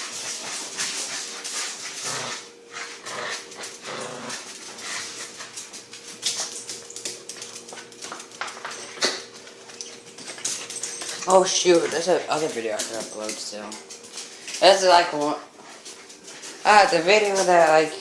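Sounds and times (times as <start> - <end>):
dog noises: 8.7 - 14.4.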